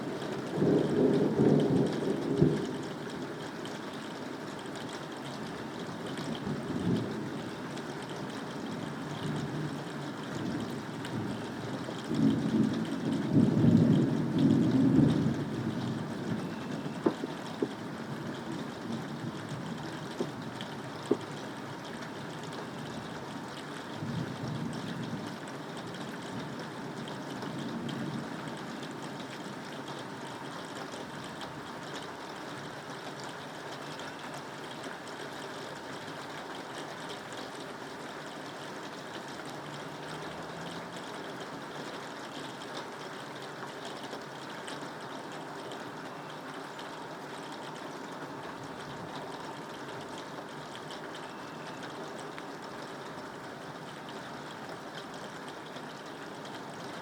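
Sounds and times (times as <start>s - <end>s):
steady rain falling: 0.0s - 57.0s
distant thunder rumble: 0.1s - 3.2s, 12.1s - 20.5s.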